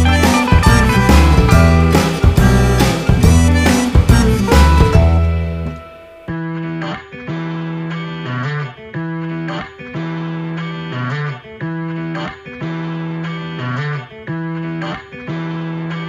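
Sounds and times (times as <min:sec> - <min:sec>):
repeating guitar riff: 0:00.0 - 0:06.9.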